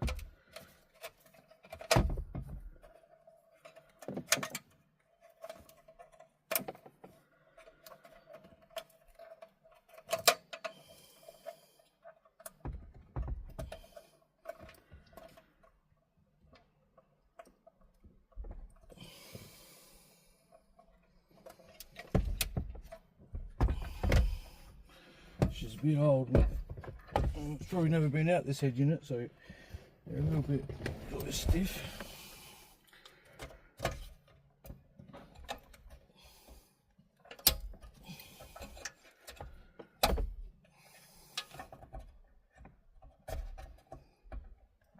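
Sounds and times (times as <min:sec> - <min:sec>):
plastic parts clicking and knocking: 0:00.0 - 0:19.6, 0:20.5 - 0:27.8, 0:32.9 - 0:44.9
dull thumps: 0:22.0 - 0:24.7, 0:25.3 - 0:27.9.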